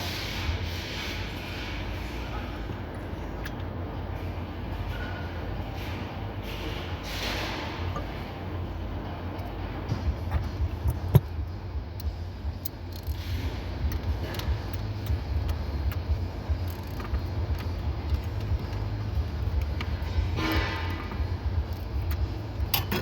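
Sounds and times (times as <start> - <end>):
steady low rumble: 7.7 - 22.8.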